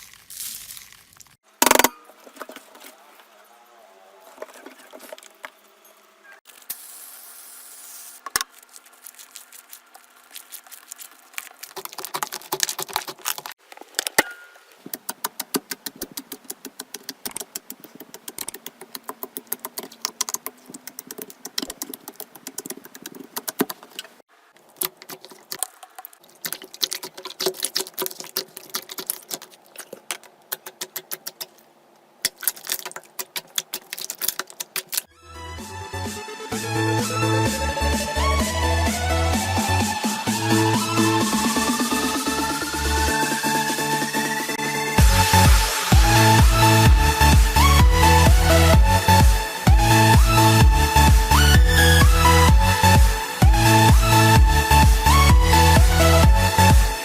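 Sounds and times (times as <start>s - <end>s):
slime crackling and popping: 0.0s - 1.4s, 8.3s - 13.6s, 24.6s - 31.6s, 32.2s - 35.1s.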